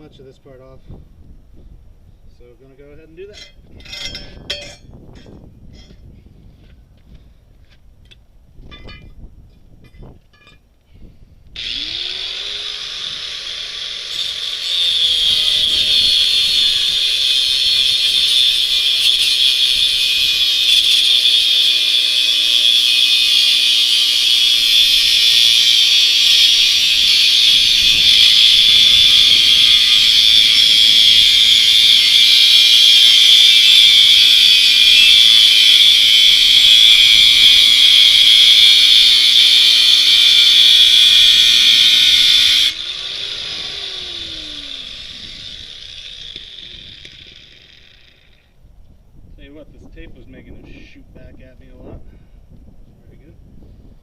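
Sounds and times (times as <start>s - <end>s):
angle grinder motor hum: 11.5s - 48.6s
angle grinder cutting steel tube: 11.6s - 48.6s.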